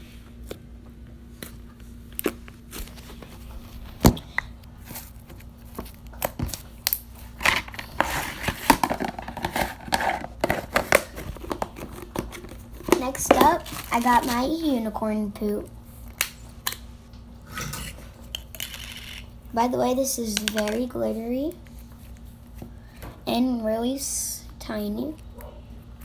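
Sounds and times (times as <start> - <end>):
slime crinkling and crackling: 1.3 - 14.8.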